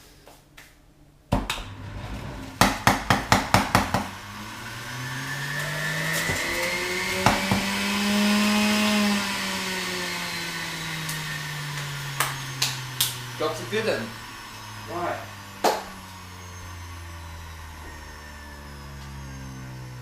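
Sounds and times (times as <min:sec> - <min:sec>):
electric juicer motor running: 0:01.4 - 0:20.0
sharp knocks: 0:02.6 - 0:04.1.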